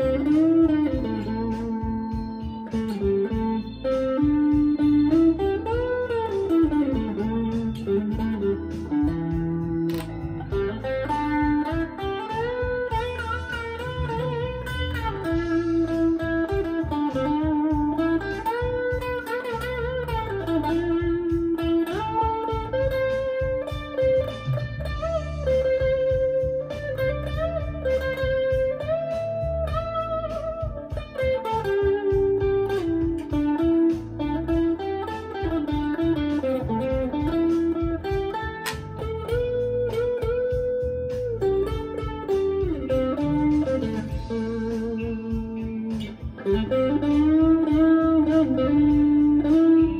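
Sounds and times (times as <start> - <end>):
drum and bass rhythm: 0.0 - 49.9
electric guitar lead line: 0.0 - 49.9.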